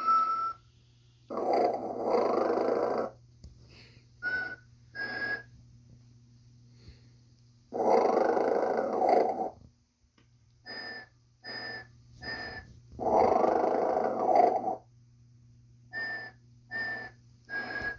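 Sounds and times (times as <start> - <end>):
short whistling tones: 0.0 - 0.7, 4.2 - 5.6, 16.0 - 17.9
steady low hum: 0.0 - 17.9
toy snoring: 1.3 - 3.2, 7.7 - 9.6, 10.7 - 14.9, 16.0 - 17.9.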